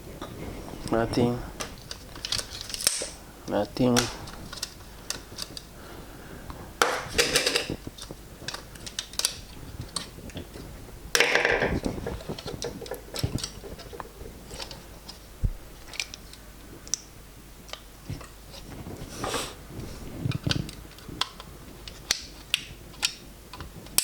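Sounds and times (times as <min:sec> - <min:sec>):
plastic parts clattering: 0:01.6 - 0:03.2, 0:03.8 - 0:05.7, 0:06.8 - 0:16.4
plastic parts clicking and tapping: 0:03.8 - 0:05.7, 0:06.8 - 0:15.2, 0:20.3 - 0:24.0.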